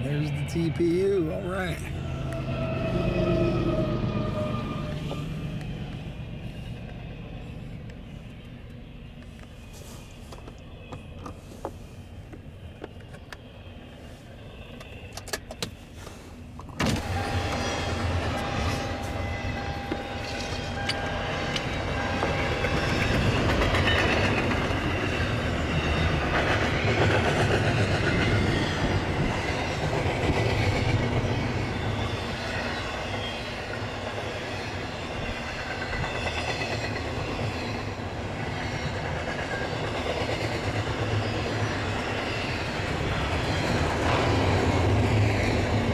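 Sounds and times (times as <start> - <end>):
steady high tone: 0.0 - 7.4
train rumbling past: 0.0 - 45.9.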